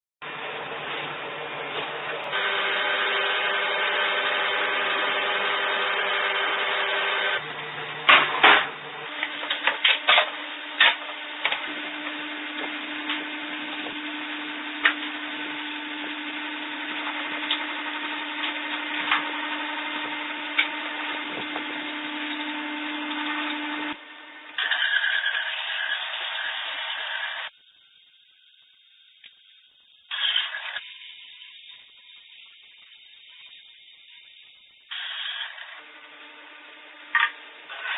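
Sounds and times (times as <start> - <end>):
power tool motor hum: 0.6 - 27.5, 34.9 - 37.9.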